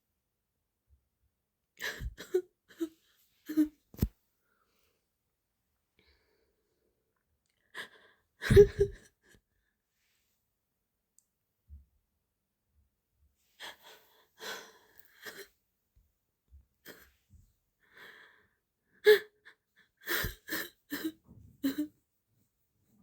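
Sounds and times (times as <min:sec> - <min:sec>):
gasping sobs: 0:01.8 - 0:02.9, 0:07.8 - 0:09.1
woman crying: 0:01.8 - 0:02.9, 0:08.4 - 0:09.1.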